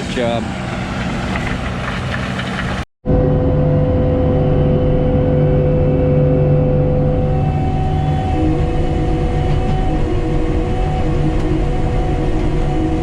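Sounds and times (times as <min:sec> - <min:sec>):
diesel engine running: 0:00.0 - 0:02.9.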